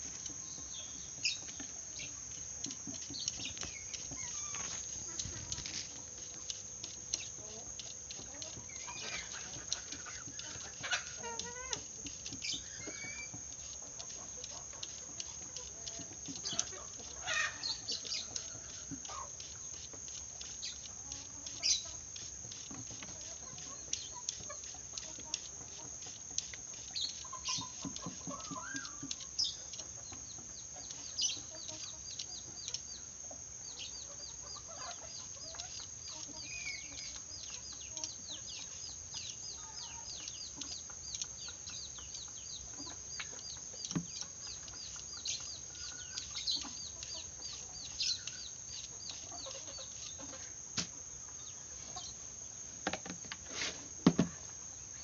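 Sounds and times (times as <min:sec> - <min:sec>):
birds chirping: 0:00.0 - 0:24.8, 0:26.8 - 0:50.6
high-pitched insect drone: 0:00.0 - 0:55.0.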